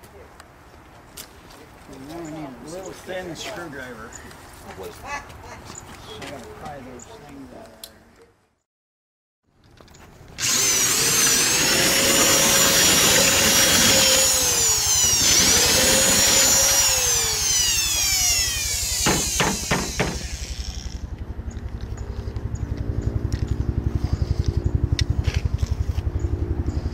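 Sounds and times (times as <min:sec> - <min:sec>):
electric power drill whining: 0:10.4 - 0:21.1.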